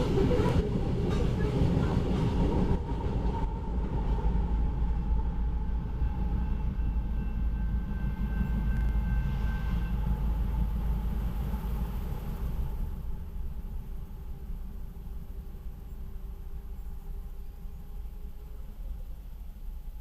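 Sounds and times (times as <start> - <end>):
freight cars rolling rumble: 0.0 - 20.0
high ringing from train wheels: 5.2 - 12.9.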